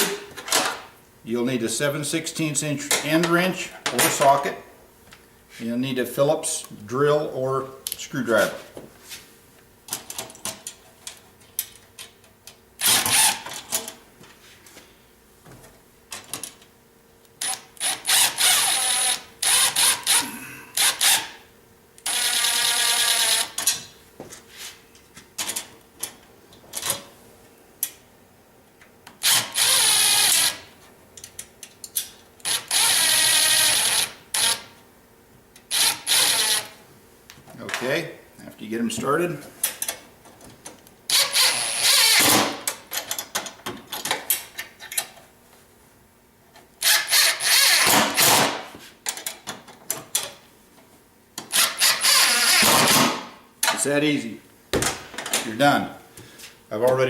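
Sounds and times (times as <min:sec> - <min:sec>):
cordless drill whirring: 0:17.4 - 0:20.2, 0:22.1 - 0:23.6, 0:29.2 - 0:30.6, 0:32.5 - 0:34.6, 0:35.7 - 0:36.7, 0:41.1 - 0:42.4, 0:46.8 - 0:48.4, 0:51.5 - 0:53.0.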